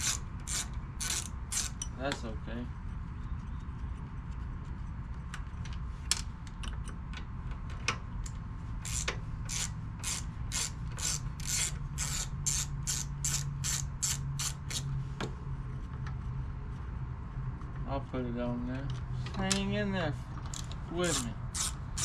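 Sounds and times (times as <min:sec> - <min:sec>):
socket ratchet clicking: 0:00.0 - 0:02.0, 0:08.2 - 0:14.9, 0:20.5 - 0:22.0.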